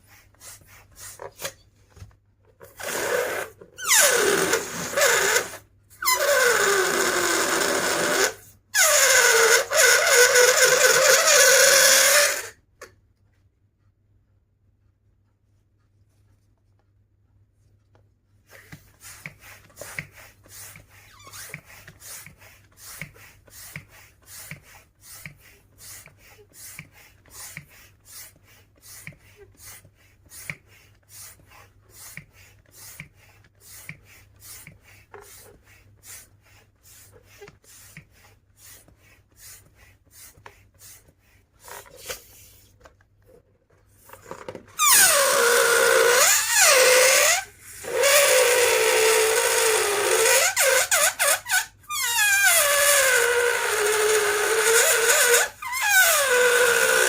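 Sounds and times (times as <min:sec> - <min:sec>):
squeaky rubbing of balloon: 0:00.0 - 0:01.7, 0:02.6 - 0:12.9, 0:18.4 - 0:57.0.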